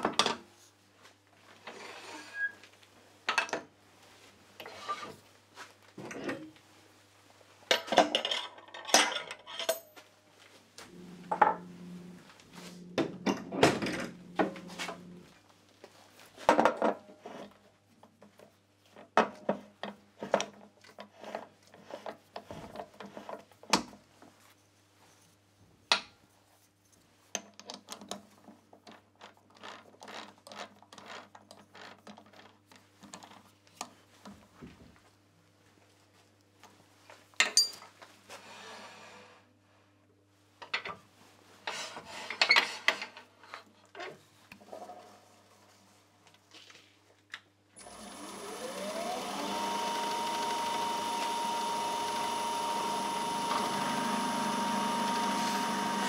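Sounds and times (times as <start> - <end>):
steady low hum: 10.9 - 15.4
metal tools clinking: 37.4 - 37.9.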